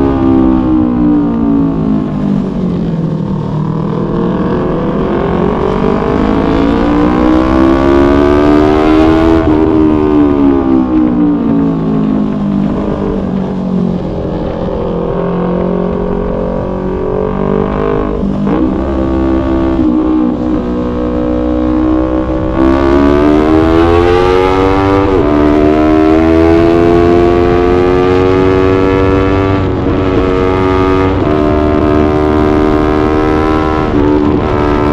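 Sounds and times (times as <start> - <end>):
motorcycle engine revving: 0.0 - 34.9
wind and road noise: 0.0 - 34.9.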